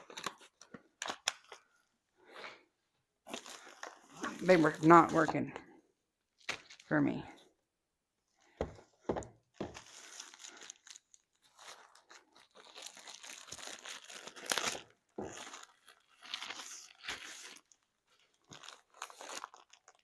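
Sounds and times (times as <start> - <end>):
plastic packaging crinkling: 0.0 - 1.9, 6.4 - 6.9, 9.6 - 20.0.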